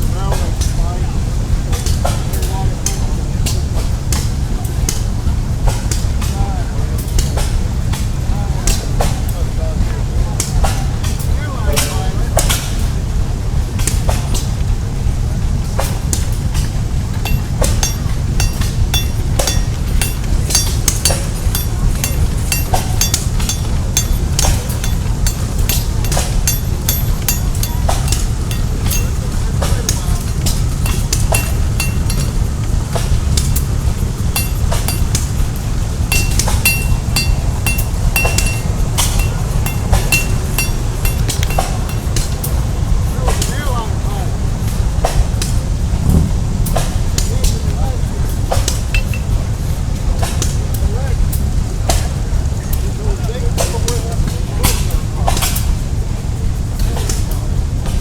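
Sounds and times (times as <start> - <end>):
hammer striking metal on anvil: 17.2 - 43.5, 48.5 - 49.4
low rumble: 43.9 - 49.9.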